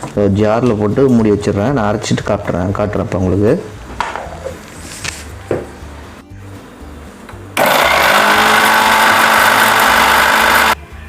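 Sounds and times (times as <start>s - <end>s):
electric mixer grinder running: 7.6s - 10.8s.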